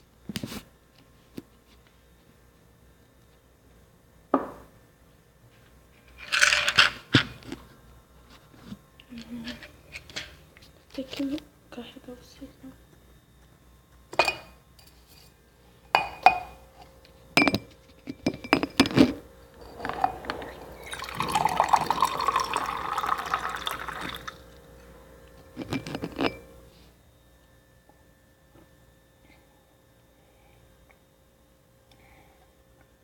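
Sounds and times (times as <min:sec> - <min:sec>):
glass knocking and clinking: 0:14.2 - 0:14.5, 0:16.0 - 0:16.6, 0:17.4 - 0:19.0, 0:19.6 - 0:24.3
liquid pouring into glass: 0:19.6 - 0:24.6.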